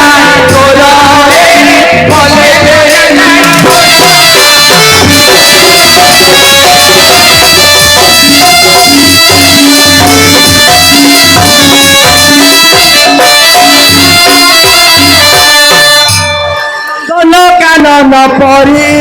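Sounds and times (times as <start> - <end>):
steady drum beat: 0.0 - 16.5
melody instrument playing a tune: 4.7 - 18.0.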